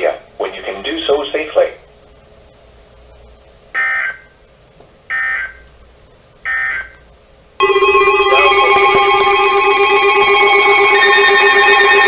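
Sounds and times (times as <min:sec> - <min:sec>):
steady chord of electronic tones: 0:07.6 - 0:12.0.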